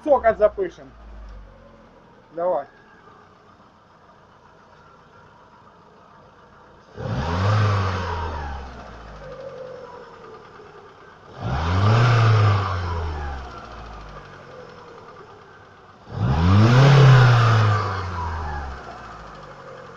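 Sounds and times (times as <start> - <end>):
car engine idling and revving: 0.0 - 19.9
engine knock clatter: 8.1 - 17.4.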